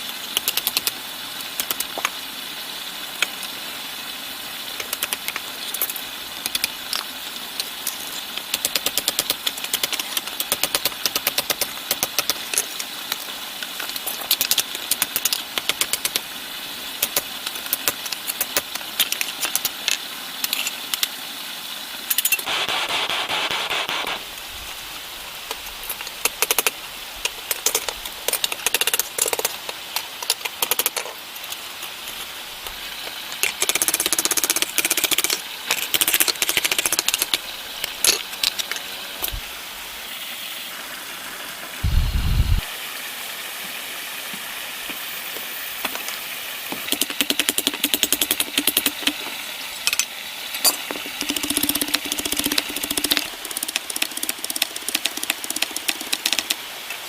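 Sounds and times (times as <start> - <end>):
short hissing burst: 22.4 - 25.4.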